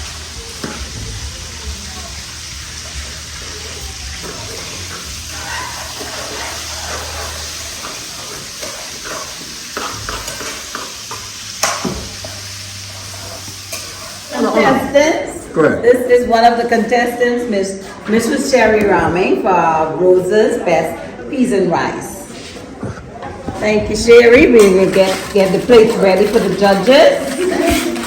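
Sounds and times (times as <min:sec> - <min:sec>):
cooking utensils clinking: 0:00.0 - 0:15.3, 0:24.0 - 0:28.0
food sizzling in a pot: 0:00.0 - 0:18.4, 0:24.2 - 0:28.0.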